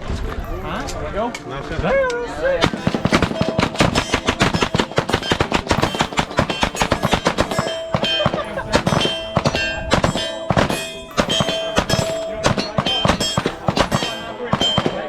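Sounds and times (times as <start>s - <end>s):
rapid overlapping gunshots: 2.4s - 15.0s.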